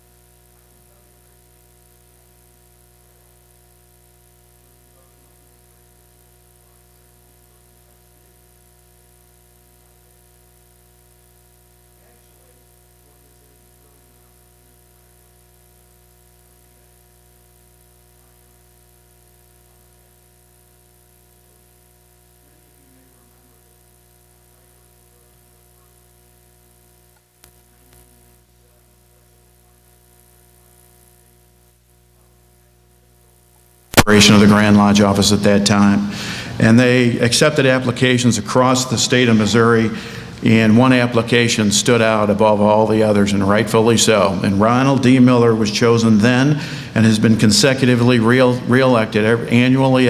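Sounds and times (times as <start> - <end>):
faint electrical hum and buzz: 0.0 - 50.0.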